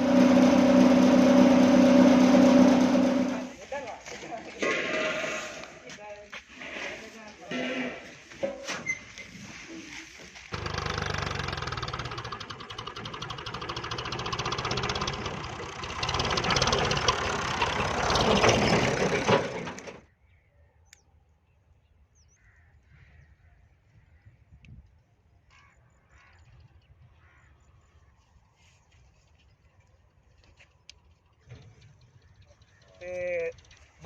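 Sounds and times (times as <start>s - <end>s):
tractor engine knocking: 10.6s - 20.0s.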